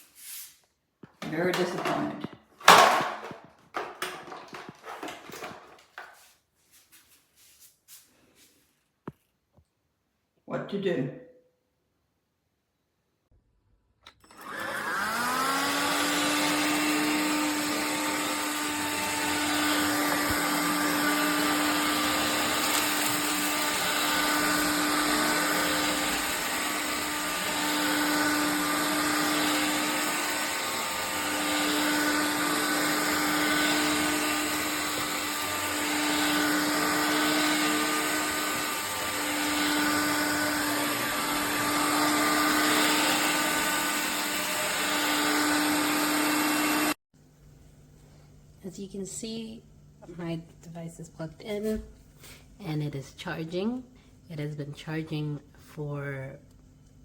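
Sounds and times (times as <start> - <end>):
cordless vacuum motor whine: 1.2 - 6.0, 14.1 - 47.0.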